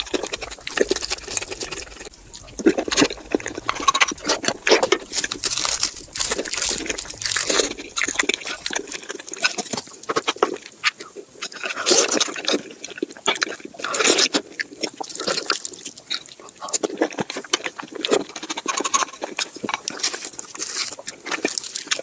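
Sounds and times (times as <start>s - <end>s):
wet sucking and slurping: 0.0s - 17.2s
small clicks and crunches: 0.0s - 22.0s.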